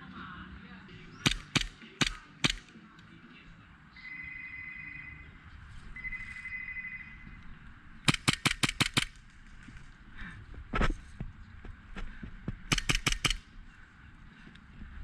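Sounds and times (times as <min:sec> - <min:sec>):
airsoft gun shots: 0:01.2 - 0:02.7, 0:08.0 - 0:09.2, 0:12.7 - 0:13.4
high-pitched tones: 0:04.0 - 0:07.4.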